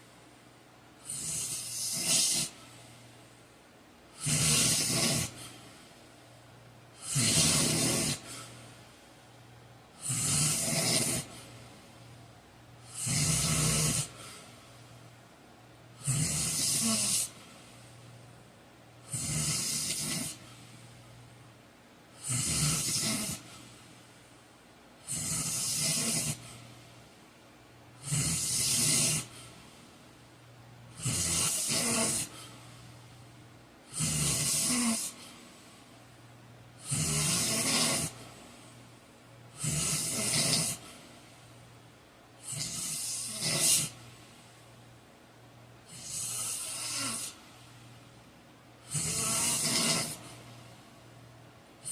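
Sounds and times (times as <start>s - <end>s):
low steady hum: 0.0s - 1.9s, 2.5s - 7.2s, 8.2s - 19.2s, 20.3s - 28.1s, 28.8s - 31.2s, 32.2s - 34.2s, 35.1s - 37.2s, 38.1s - 40.2s, 40.8s - 43.3s, 43.9s - 49.2s, 50.1s - 51.9s
man snoring: 1.0s - 2.6s, 4.1s - 5.6s, 7.0s - 8.6s, 10.0s - 11.6s, 12.8s - 14.4s, 16.0s - 17.4s, 19.0s - 20.4s, 22.2s - 23.6s, 25.0s - 26.6s, 28.0s - 29.5s, 30.9s - 32.6s, 33.9s - 35.4s, 36.8s - 38.3s, 39.6s - 41.0s, 42.4s - 44.0s, 45.9s - 47.4s, 48.8s - 50.4s.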